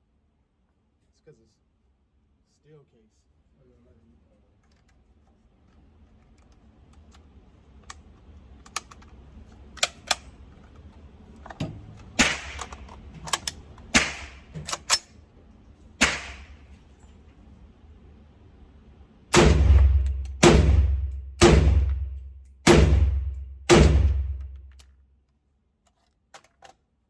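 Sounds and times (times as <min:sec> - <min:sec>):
metallic gun clicks: 0:11.5 - 0:15.2, 0:24.1 - 0:25.0
gunshots: 0:12.2 - 0:12.9, 0:13.9 - 0:14.6, 0:16.0 - 0:16.7, 0:19.3 - 0:24.6.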